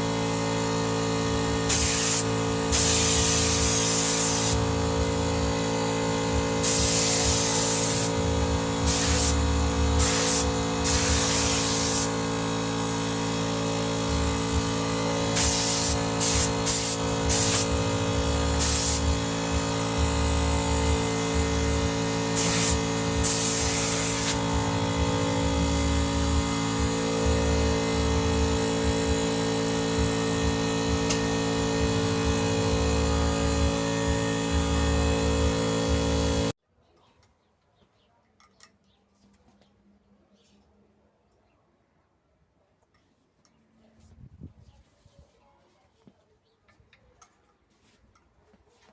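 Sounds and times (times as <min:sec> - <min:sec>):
air compressor running: 0:00.0 - 0:36.6
compressed air hissing: 0:01.6 - 0:05.6, 0:06.4 - 0:27.0.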